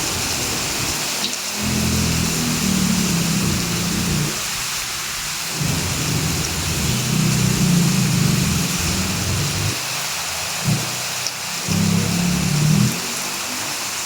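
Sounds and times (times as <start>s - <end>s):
heavy rain: 0.0s - 14.0s
deep low rumble: 5.6s - 9.8s, 10.6s - 10.9s.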